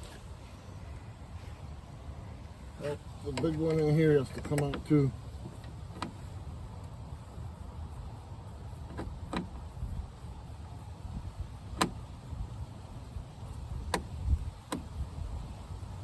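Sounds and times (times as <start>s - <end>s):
low steady rumble: 0.0s - 16.0s.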